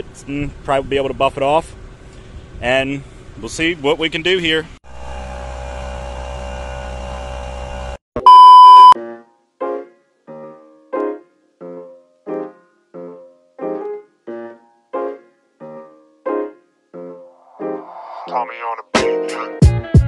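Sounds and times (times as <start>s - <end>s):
steady machine hum: 4.9s - 9.0s
loud steady beep: 8.2s - 9.0s
keyboard music: 8.2s - 20.0s.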